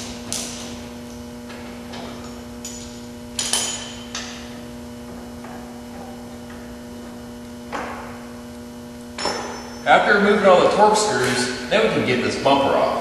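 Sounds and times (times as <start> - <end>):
steady electrical hum: 0.0 - 13.0
metal tool clinks and knocks: 9.2 - 9.9.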